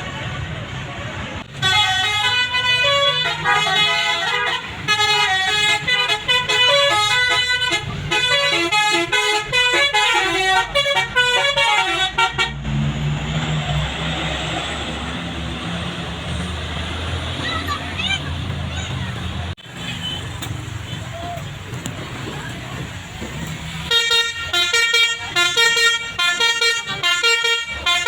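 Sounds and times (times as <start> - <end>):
bus engine rumble: 0.0 - 28.0
musical air horn melody: 1.6 - 12.6, 23.8 - 28.0.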